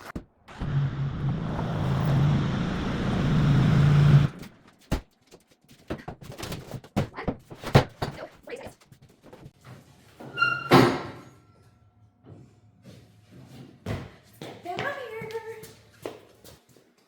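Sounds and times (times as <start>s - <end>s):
motor humming: 0.5s - 4.5s
knocks and thuds: 5.8s - 8.4s.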